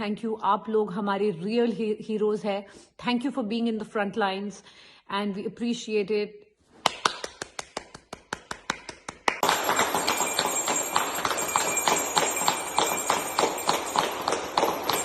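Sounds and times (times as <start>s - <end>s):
hands clapping in rhythm: 6.8s - 10.0s
many people clapping and striking: 6.9s - 15.0s
bells ringing: 9.4s - 15.0s.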